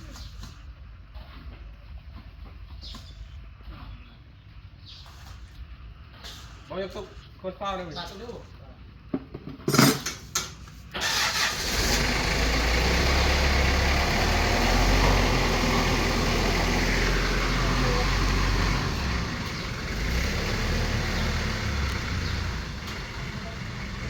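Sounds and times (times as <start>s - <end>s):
vehicle engine running: 11.0s - 24.0s.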